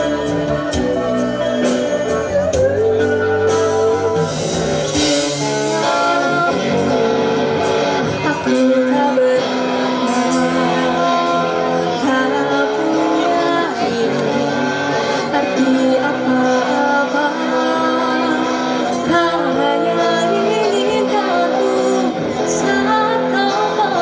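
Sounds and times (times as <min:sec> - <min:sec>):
band music: 0:00.0 - 0:24.0
person singing: 0:00.0 - 0:24.0.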